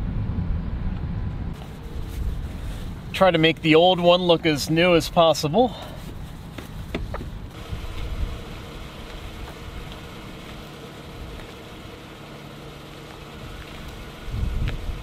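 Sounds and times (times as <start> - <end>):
vehicle engine idling: 1.5 - 15.0.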